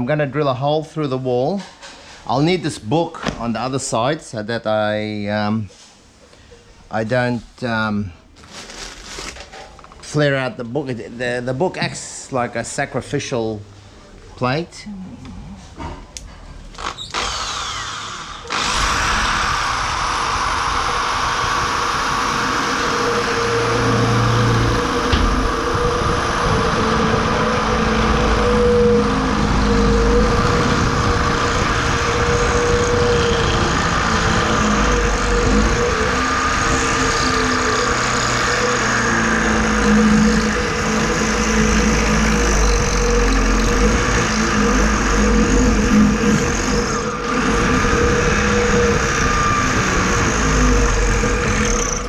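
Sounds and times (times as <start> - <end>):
electric drill boring into wall: 8.4 - 9.6, 16.7 - 52.0.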